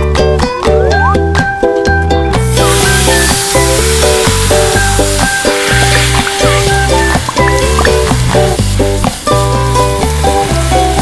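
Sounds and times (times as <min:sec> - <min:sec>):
bright melody over bass line: 0:00.1 - 0:11.0.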